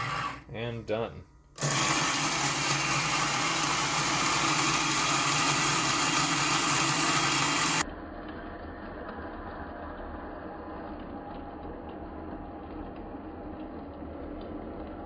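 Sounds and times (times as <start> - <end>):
coffee grinder motor: 0.0 - 0.5, 1.6 - 7.8.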